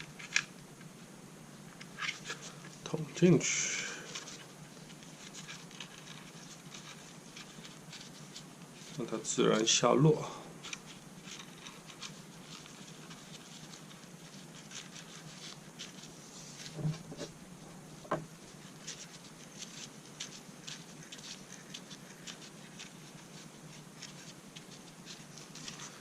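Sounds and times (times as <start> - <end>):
faint ticking and scratching: 0.0 - 17.4, 18.0 - 26.0
soft knocks: 18.0 - 18.3.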